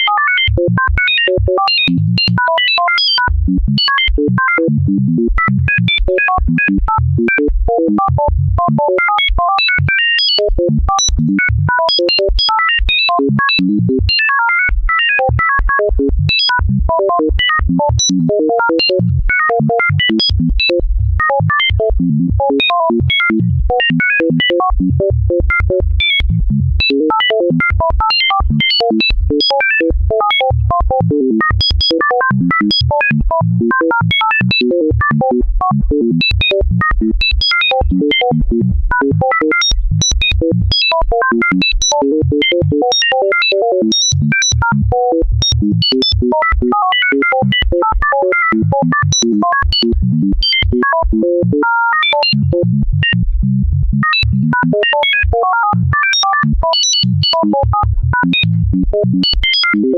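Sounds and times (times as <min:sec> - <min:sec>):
electronic bleeps at random pitches: 0:15.2 - 0:35.8, 0:36.5 - 0:53.3, 0:54.0 - 0:59.9.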